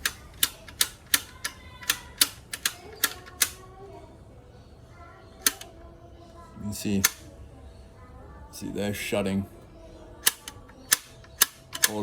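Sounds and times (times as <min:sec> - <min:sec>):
engine flaps clicking: 0:00.0 - 0:03.7, 0:10.2 - 0:12.0.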